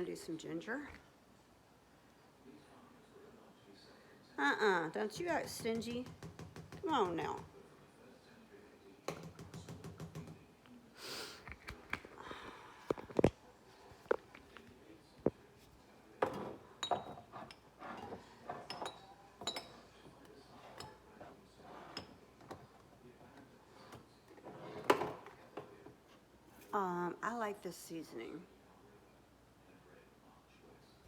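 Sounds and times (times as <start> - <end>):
spice jars knocking on counter: 5.1 - 7.6, 9.1 - 10.4
glass jars clinking: 16.2 - 20.0.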